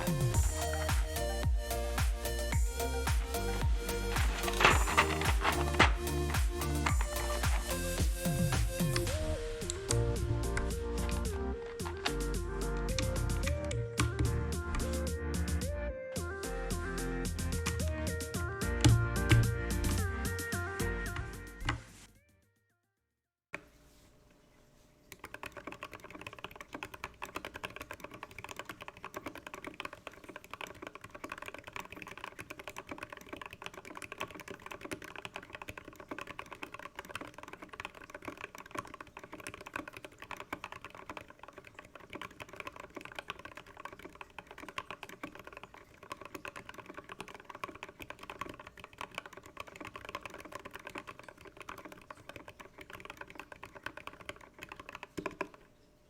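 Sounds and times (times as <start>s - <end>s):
fast mechanical keyboard typing: 0.0s - 10.0s, 25.1s - 55.7s.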